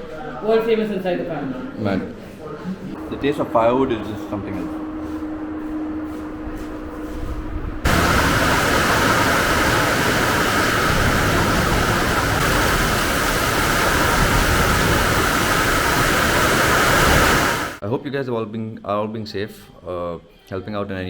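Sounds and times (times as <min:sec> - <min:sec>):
loud steady rushing noise: 0:07.8 - 0:17.8.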